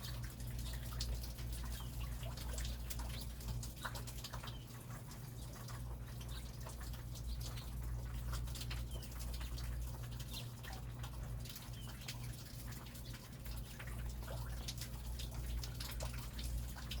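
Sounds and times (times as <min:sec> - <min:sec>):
rain drips and splashes: 0:00.0 - 0:17.0.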